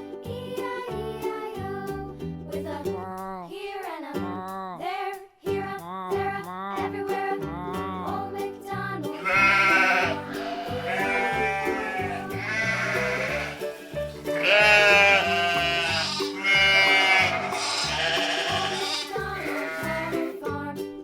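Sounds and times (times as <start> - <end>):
upbeat children's music: 0.0 - 21.0
wavering bleat-like voice: 9.2 - 13.7, 14.3 - 20.3.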